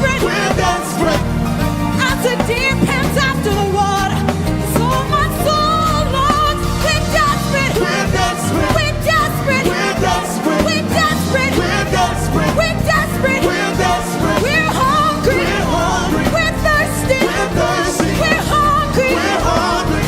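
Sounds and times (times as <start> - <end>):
live gospel band music: 0.0 - 20.0
sliding melodic line: 0.0 - 20.0
steady drums: 0.0 - 20.0
strong bass: 10.8 - 20.0.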